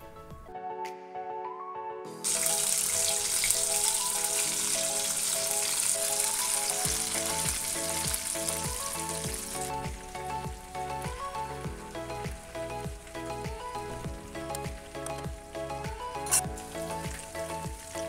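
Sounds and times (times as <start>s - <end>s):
background music: 0.0s - 18.0s
chicken frying in oil: 2.2s - 10.6s.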